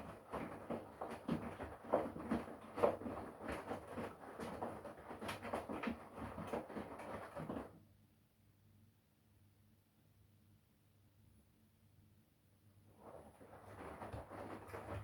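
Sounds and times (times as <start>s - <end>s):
washing machine drum tumbling laundry: 0.0s - 7.7s, 13.0s - 15.0s.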